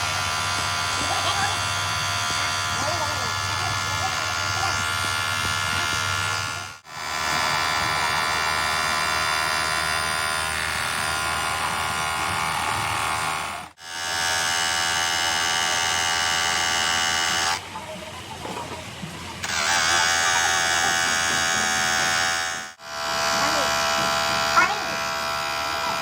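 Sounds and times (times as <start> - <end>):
workshop machinery buzzing: 0.0 - 26.0.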